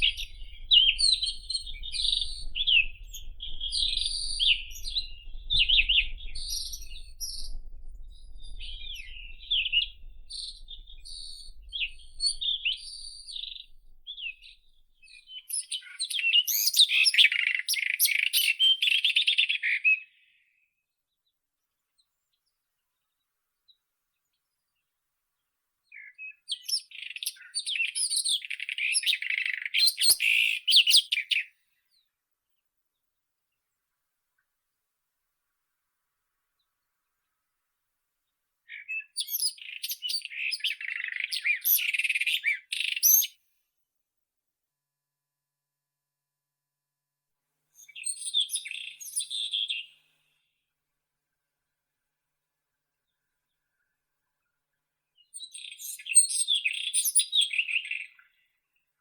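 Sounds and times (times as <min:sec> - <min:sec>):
robin singing: 0:00.0 - 0:19.8, 0:38.7 - 0:43.3, 0:47.8 - 0:50.0.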